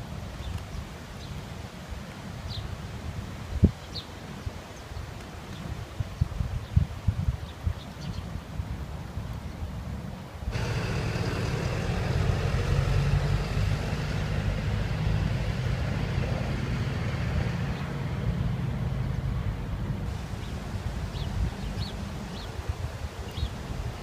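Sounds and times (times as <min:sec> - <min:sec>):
vehicle engine humming: 0:10.5 - 0:22.6.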